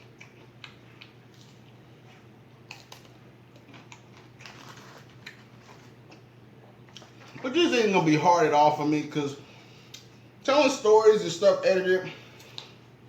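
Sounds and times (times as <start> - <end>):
close-up chewing: 0.0 - 7.5
low steady hum: 0.0 - 13.0.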